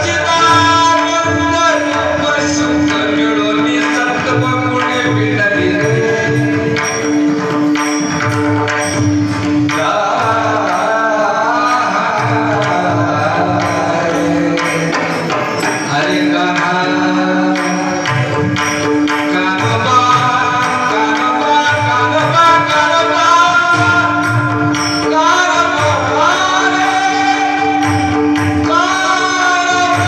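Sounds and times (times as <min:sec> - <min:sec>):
man singing: 0:00.0 - 0:07.6, 0:09.5 - 0:30.0
hand drum beats: 0:00.0 - 0:30.0.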